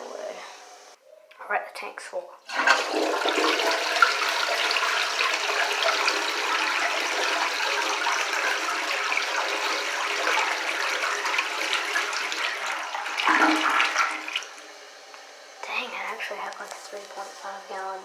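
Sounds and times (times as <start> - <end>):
toilet flushing: 0.0 - 1.0, 2.4 - 18.0.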